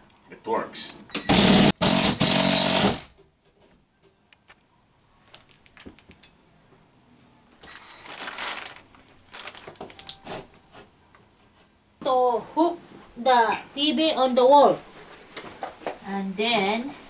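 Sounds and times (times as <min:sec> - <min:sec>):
power drill driving a screw: 0:01.3 - 0:03.1.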